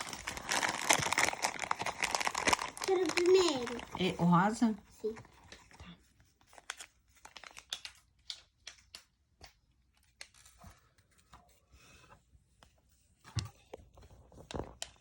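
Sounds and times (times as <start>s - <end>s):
plastic packaging crinkling and tearing: 0.0s - 5.8s, 6.4s - 9.1s.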